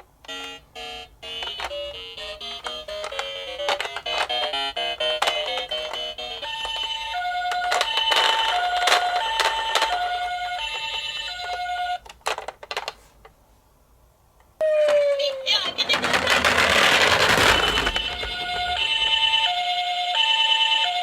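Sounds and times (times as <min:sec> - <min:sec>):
two-tone ambulance siren: 0:14.6 - 0:15.5, 0:18.5 - 0:21.0.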